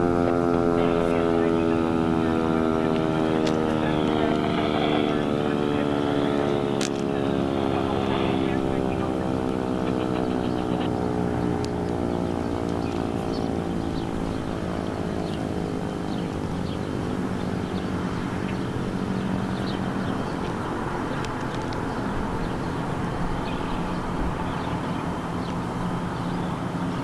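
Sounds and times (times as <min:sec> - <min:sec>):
warning siren low buzzy tone: 0:00.0 - 0:12.6.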